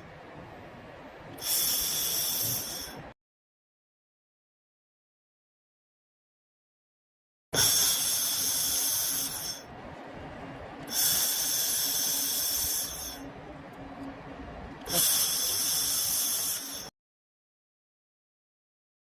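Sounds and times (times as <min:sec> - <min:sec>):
laser welder hissing: 0:01.4 - 0:03.1, 0:07.6 - 0:09.7, 0:10.8 - 0:13.2, 0:14.8 - 0:16.9.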